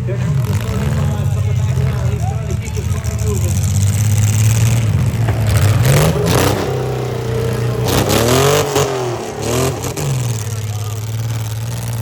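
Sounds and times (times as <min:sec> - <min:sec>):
car engines revving: 0:00.0 - 0:12.0
sharp bangs: 0:03.9 - 0:10.6.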